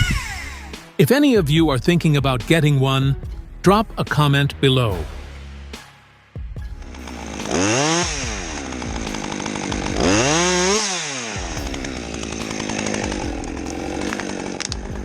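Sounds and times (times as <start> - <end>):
two-stroke chainsaw revving: 6.8 - 15.0.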